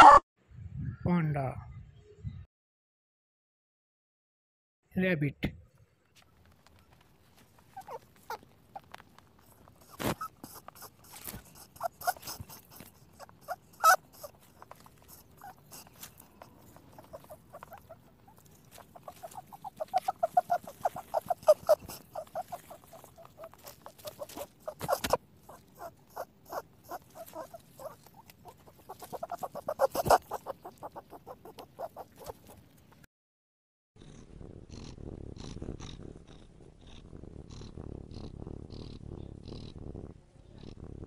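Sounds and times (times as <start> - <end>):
rabbit clicking: 7.8 - 32.8.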